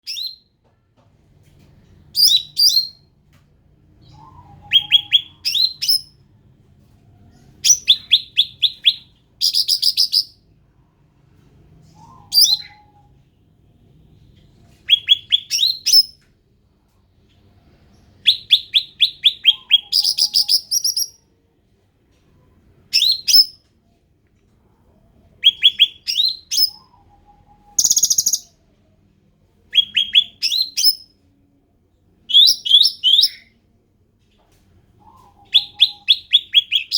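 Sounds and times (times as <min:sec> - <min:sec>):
bird chattering song: 0:18.3 - 0:21.2, 0:25.4 - 0:28.6.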